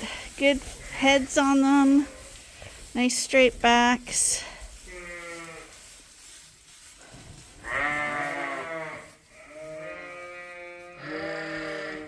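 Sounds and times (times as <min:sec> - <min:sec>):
sheep bleating: 0:07.7 - 0:12.0.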